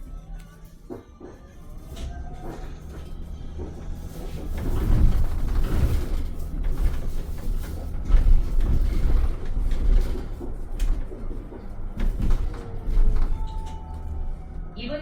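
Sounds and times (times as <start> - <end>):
bus engine and road rumble: 0.0 - 15.0
rattles from bus fittings: 0.4 - 14.6.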